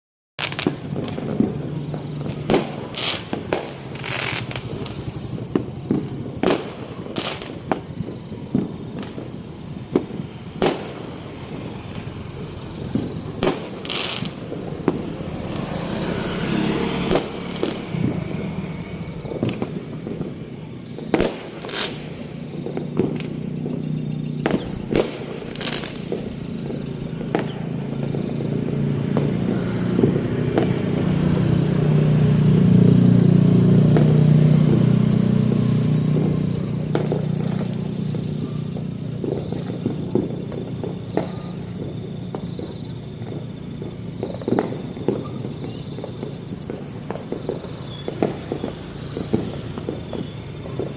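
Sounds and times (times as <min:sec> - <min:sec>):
fireworks bangs and crackles: 0:00.4 - 0:50.9.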